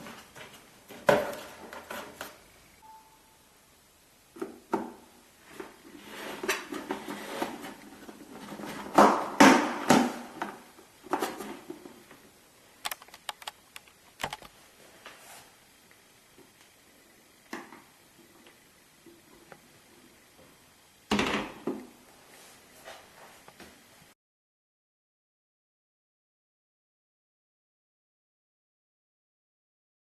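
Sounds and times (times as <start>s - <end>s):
sharp clicks: 12.8s - 14.5s.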